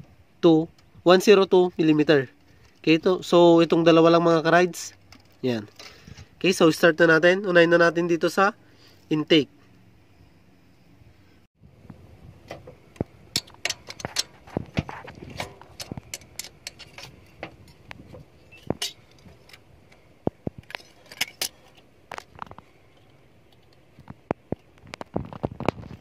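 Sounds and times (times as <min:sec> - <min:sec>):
metal tools clinking on engine parts: 0:13.3 - 0:19.7, 0:20.6 - 0:23.8.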